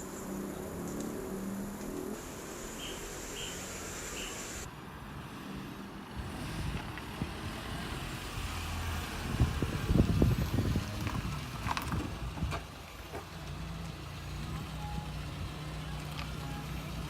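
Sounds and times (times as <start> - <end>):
car engine running: 0.0 - 4.6.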